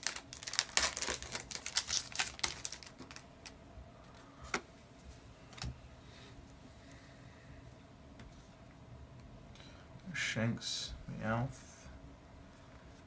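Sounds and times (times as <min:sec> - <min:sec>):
foil packet crackling: 0:00.0 - 0:03.6.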